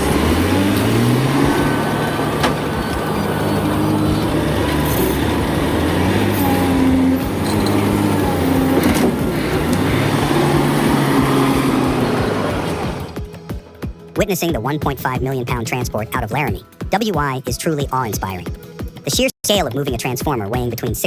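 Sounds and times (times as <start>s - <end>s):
truck diesel engine under load: 0.0s - 13.3s.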